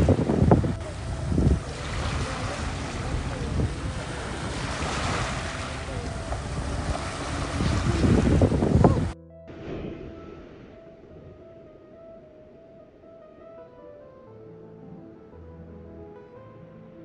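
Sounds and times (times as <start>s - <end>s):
sea waves washing on shore: 0.0s - 11.4s
wind buffeting microphone: 0.0s - 13.7s.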